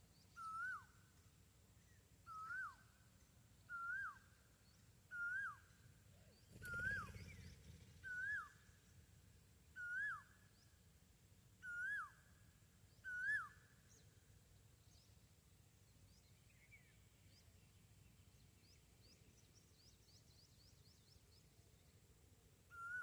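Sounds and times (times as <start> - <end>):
francolin whistled call: 0.3 - 0.9, 2.2 - 2.9, 3.7 - 4.3, 5.1 - 5.8, 9.8 - 10.4, 11.6 - 12.2, 13.0 - 13.7, 22.7 - 23.0.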